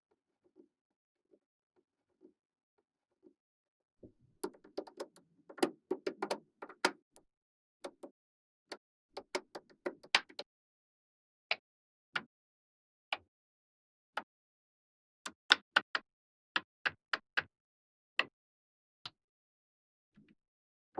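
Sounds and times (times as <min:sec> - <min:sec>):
magnetic balls clicking together: 0:04.4 - 0:07.2, 0:07.9 - 0:08.1, 0:09.2 - 0:10.4.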